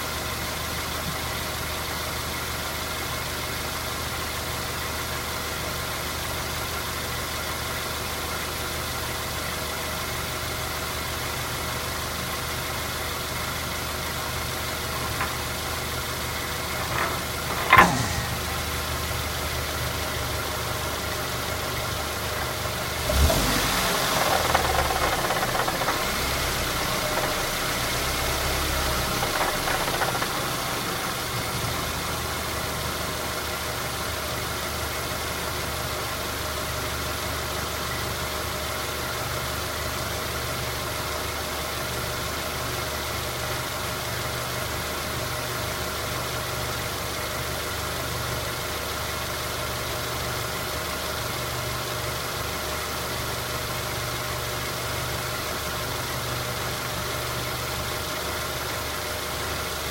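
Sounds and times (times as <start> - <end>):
car engine low drone: 10.1 - 34.7
transmission knocking: 14.8 - 20.2, 23.8 - 31.8.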